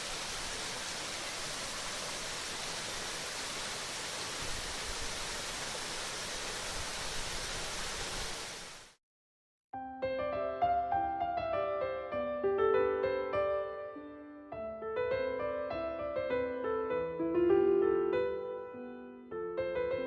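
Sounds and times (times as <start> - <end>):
waterfall roaring: 0.0 - 8.9
piano music: 9.8 - 20.0.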